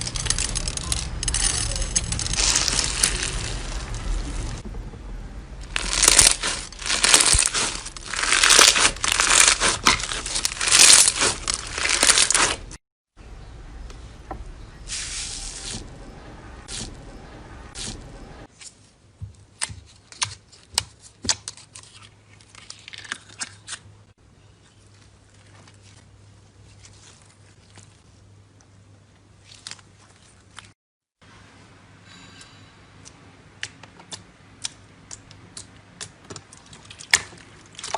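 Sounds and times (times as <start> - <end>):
slime crackling and tearing: 0.0 - 4.6, 5.6 - 12.8.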